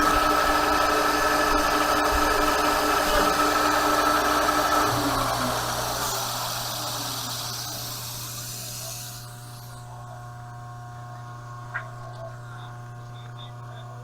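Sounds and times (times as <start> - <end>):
lathe cutting hiss: 0.0 - 10.1
lathe motor hum: 0.0 - 14.0.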